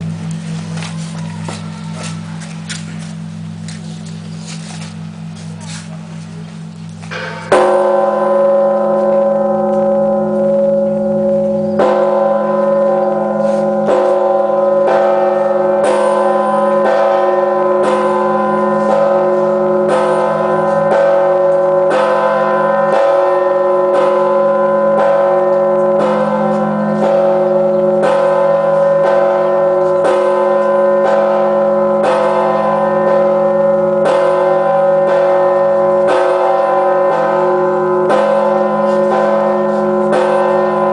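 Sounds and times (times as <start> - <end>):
church bell tolling: 0.0 - 3.6, 6.6 - 40.9.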